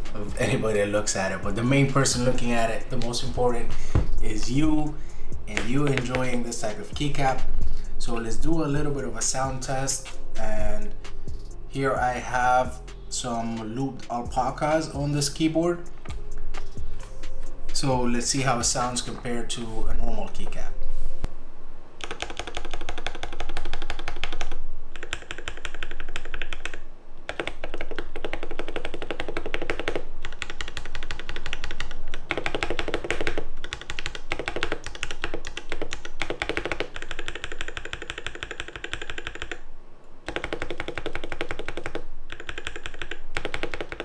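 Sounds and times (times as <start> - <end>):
mechanical keyboard typing: 5.5 - 7.5, 22.0 - 39.6, 40.2 - 44.0.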